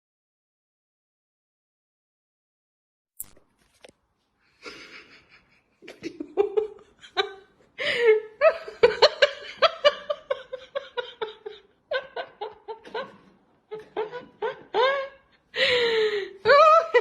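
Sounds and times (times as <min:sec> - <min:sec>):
person laughing: 0:04.6 - 0:17.0.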